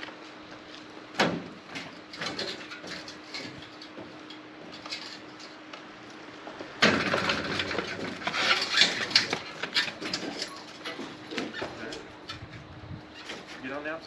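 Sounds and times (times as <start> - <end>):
metal parts clattering: 6.9 - 12.1.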